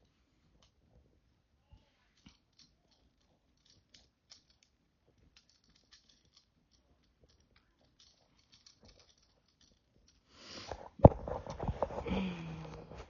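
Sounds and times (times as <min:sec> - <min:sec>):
plastic toy pieces clicking: 0:05.4 - 0:10.2.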